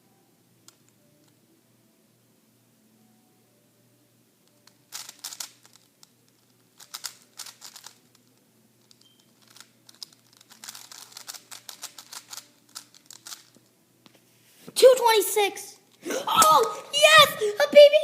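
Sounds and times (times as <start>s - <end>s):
puzzle cube clicking: 4.5s - 13.7s.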